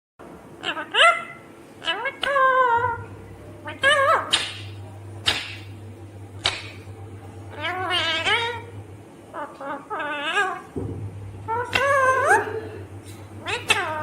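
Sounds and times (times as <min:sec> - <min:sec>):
parrot shrieking and warbling: 0:00.6 - 0:04.8, 0:07.5 - 0:08.7, 0:09.3 - 0:10.7, 0:11.5 - 0:12.6, 0:13.4 - 0:14.0.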